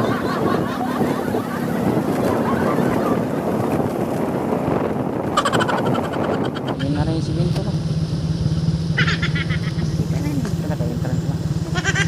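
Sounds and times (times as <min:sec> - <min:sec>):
wind noise on microphone: 0:00.0 - 0:08.1.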